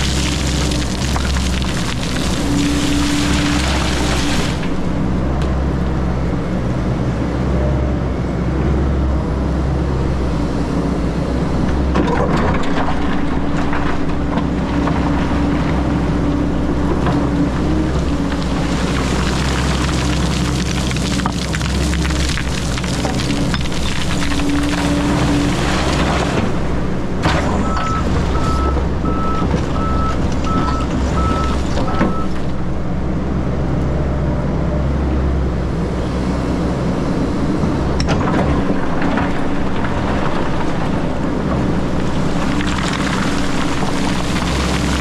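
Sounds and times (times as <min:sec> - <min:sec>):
excavator diesel engine running: 0:00.0 - 0:45.0.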